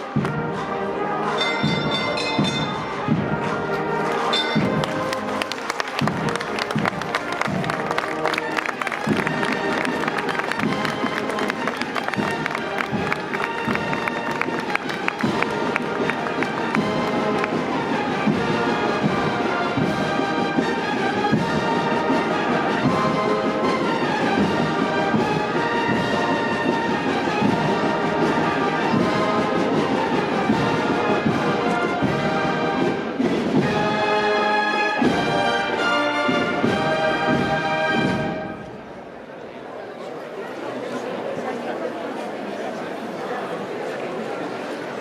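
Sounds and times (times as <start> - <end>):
brass band playing: 0.0 - 38.8.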